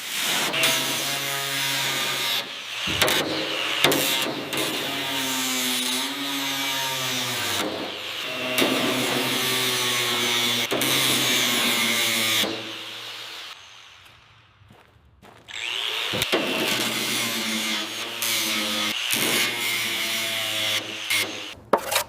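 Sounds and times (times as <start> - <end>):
power tool motor whining: 15.5 - 21.4.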